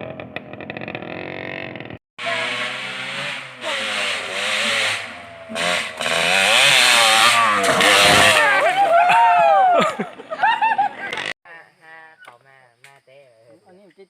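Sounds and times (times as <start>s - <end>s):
motorcycle engine revving: 0.0s - 8.8s.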